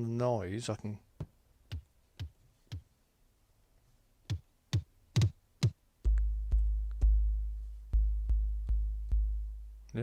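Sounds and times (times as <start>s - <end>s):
electronic kick drums: 5.2s - 10.0s
deep bass tone: 6.1s - 10.0s.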